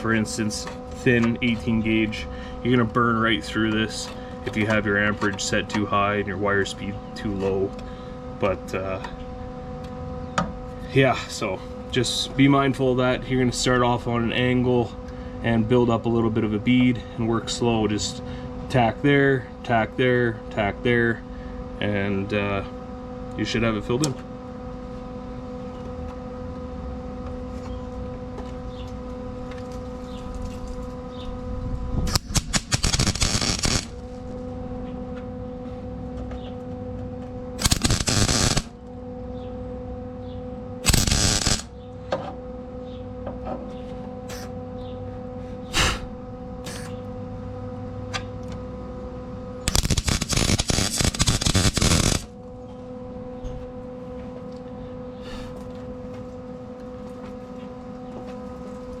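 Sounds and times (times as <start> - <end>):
welder steady hum: 0.0 - 59.0
welding arc crackling: 32.1 - 34.5, 37.6 - 38.8, 40.9 - 41.7, 49.7 - 52.4.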